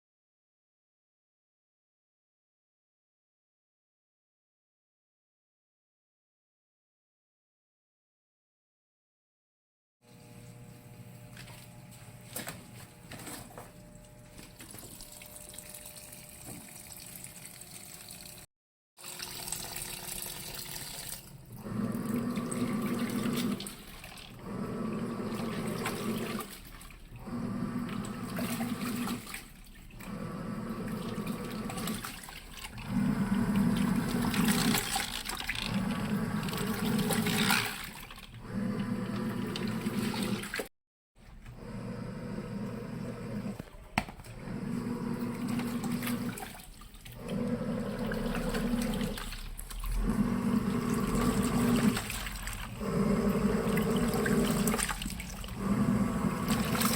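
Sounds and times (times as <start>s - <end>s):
washing machine motor: 10.0s - 56.9s
water churning in tub: 19.0s - 40.7s, 41.6s - 56.9s.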